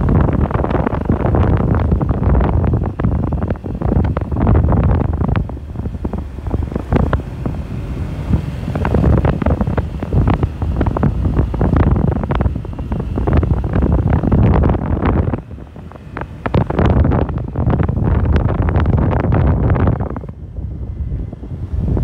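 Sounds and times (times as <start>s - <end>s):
knocks and rattles on bumpy road: 0.0s - 22.0s
wind buffeting microphone: 0.0s - 22.0s.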